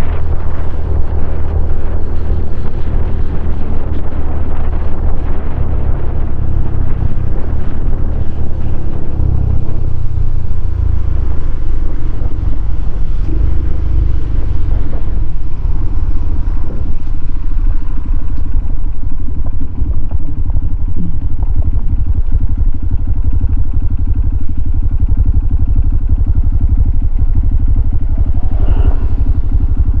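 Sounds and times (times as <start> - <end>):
motorcycle engine idling: 0.0 - 30.0
wind rushing: 26.9 - 30.0.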